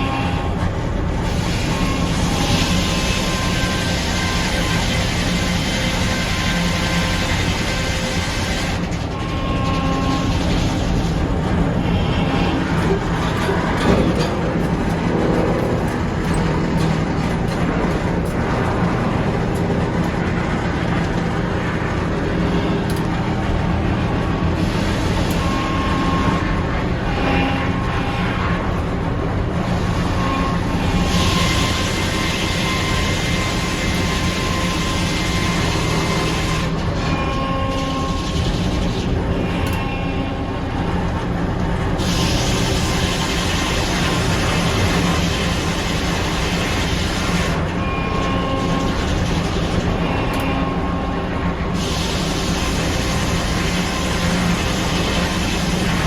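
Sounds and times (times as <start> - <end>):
sawmill engine hum: 0.0 - 56.0
saw cutting wood: 1.3 - 17.1, 29.7 - 40.2, 51.8 - 56.0.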